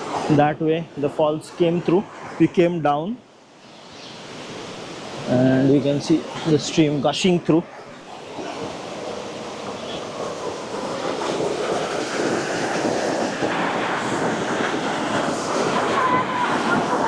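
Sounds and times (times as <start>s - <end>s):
water rushing over rocks: 7.9s - 17.0s.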